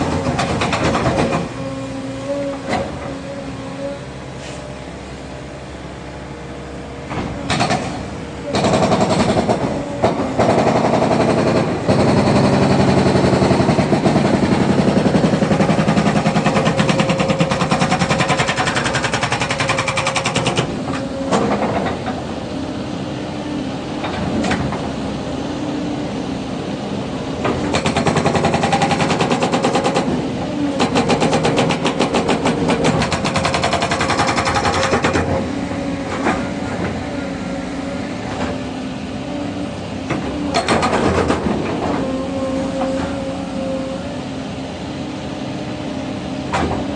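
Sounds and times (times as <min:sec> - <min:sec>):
hydraulic breaker hammering: 0:00.0 - 0:01.7, 0:07.1 - 0:22.2, 0:27.4 - 0:37.0, 0:40.1 - 0:42.1
excavator engine running: 0:00.0 - 0:46.9.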